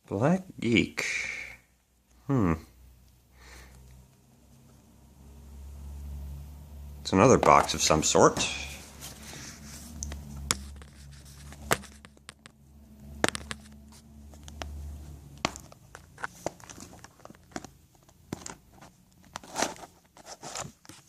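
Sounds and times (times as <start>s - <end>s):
cardboard packaging rustling and tearing: 15.4s - 21.0s.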